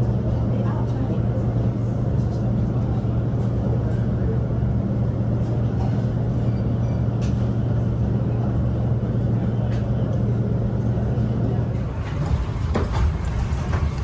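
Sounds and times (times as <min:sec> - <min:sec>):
low mechanical drone: 0:11.4 - 0:14.0.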